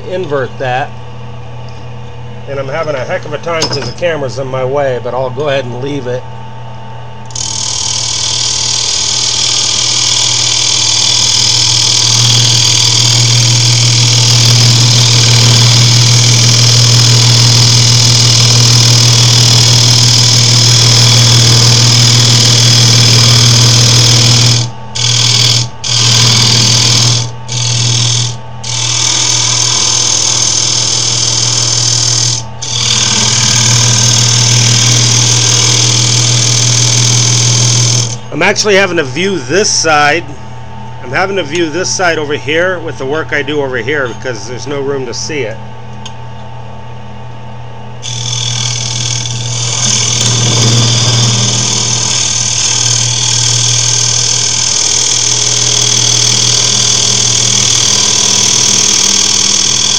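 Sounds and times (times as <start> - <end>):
turning tool cutting wood hiss: 7.3 - 38.2, 48.0 - 59.9
wood lathe motor hum: 7.3 - 38.3, 48.0 - 59.9.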